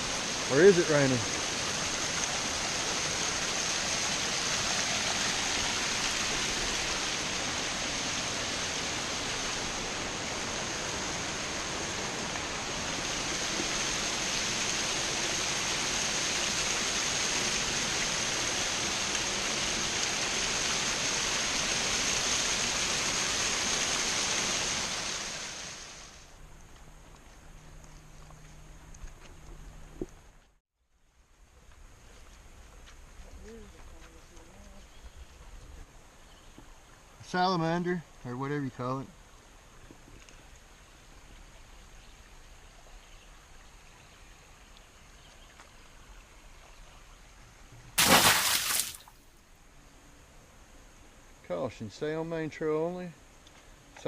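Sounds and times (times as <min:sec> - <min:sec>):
waterfall rushing: 0:00.0 - 0:26.2.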